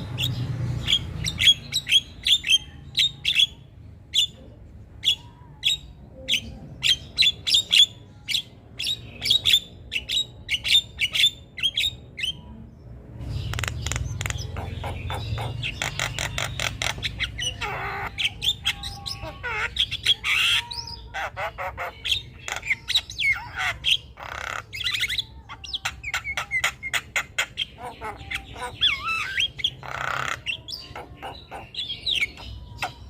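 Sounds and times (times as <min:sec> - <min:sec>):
myna bird calling: 0:13.3 - 0:33.0.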